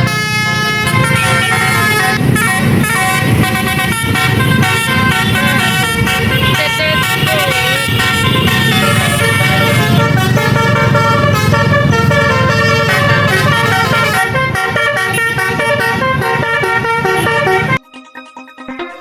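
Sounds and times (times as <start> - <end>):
bus musical horn melody: 0.0 - 17.8.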